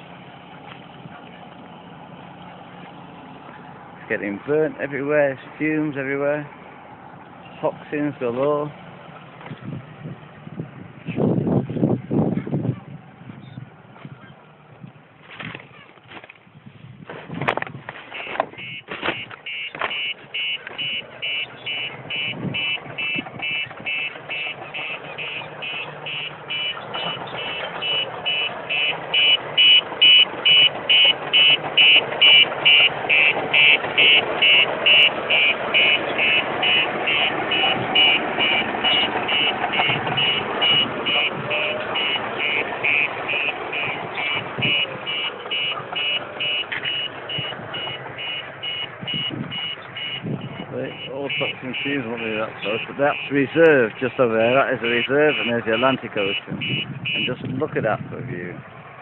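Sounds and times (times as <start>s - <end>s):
heavy vehicle engine running: 0.0s - 59.0s
reversing alarm beeping: 18.1s - 53.4s, 54.8s - 57.3s.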